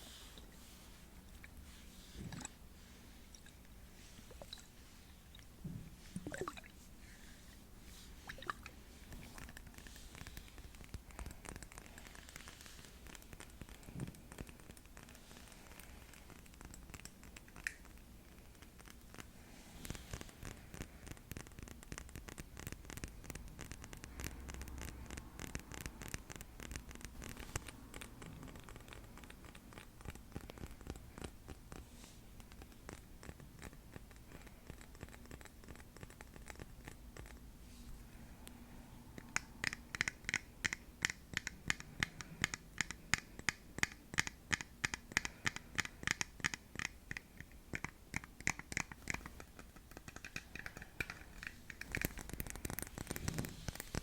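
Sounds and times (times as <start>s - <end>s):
fingers scratching hard object: 39.2s - 54.0s.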